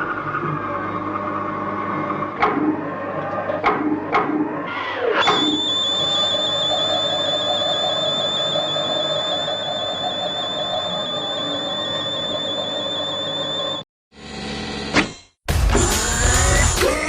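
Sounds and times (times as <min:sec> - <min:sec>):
high wavering electronic whistle: 0:04.7 - 0:13.9.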